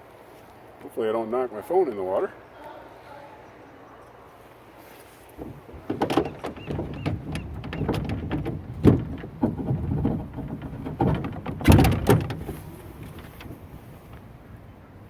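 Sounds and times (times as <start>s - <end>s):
oars knocking in rowboat: 5.1s - 14.7s.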